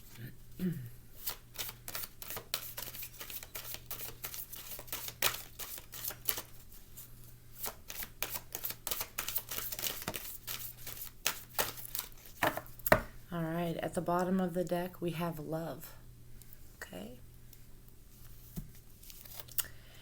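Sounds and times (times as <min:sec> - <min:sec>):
cards being shuffled: 0:01.2 - 0:06.6, 0:07.6 - 0:12.8, 0:18.5 - 0:19.6.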